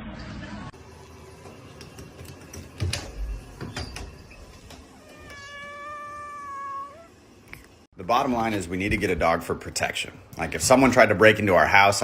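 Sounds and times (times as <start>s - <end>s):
cat meowing: 4.9s - 7.1s.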